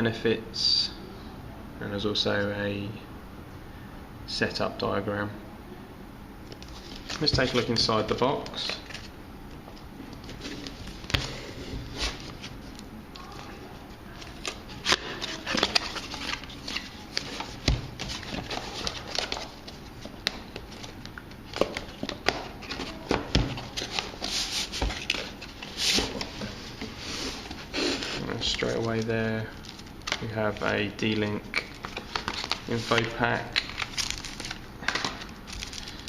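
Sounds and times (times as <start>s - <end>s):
cardboard packaging rustling: 10.1s - 36.0s.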